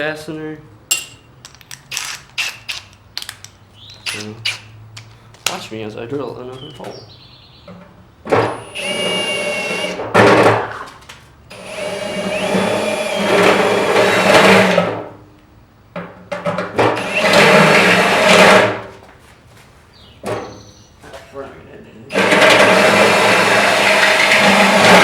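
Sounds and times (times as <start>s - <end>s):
electric drill whining: 8.4s - 10.1s, 11.5s - 14.9s, 16.9s - 18.8s, 22.1s - 25.0s.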